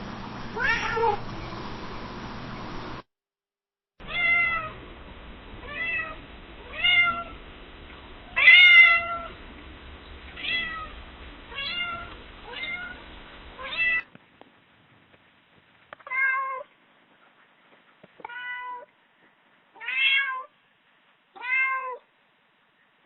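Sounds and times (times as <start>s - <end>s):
cat meowing: 0.6s - 1.2s, 4.0s - 4.8s, 5.6s - 7.3s, 8.4s - 9.3s, 11.5s - 13.0s, 18.2s - 18.9s, 19.8s - 20.5s, 21.4s - 22.1s.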